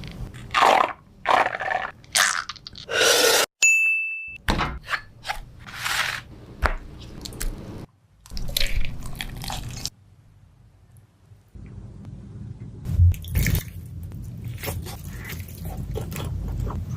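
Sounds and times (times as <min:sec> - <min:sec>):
crunchy bites and chewing: 0:08.3 - 0:09.9.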